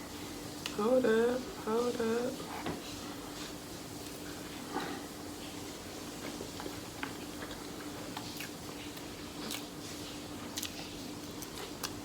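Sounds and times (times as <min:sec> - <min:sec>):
faint steady hum: 0:00.0 - 0:12.0
person chewing food: 0:06.1 - 0:12.0.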